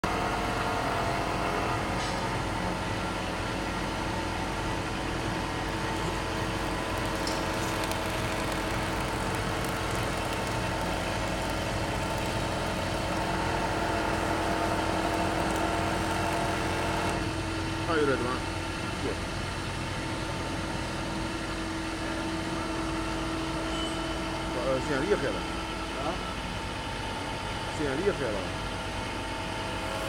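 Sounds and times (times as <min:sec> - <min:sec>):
wood milling machine humming: 0:00.0 - 0:18.3.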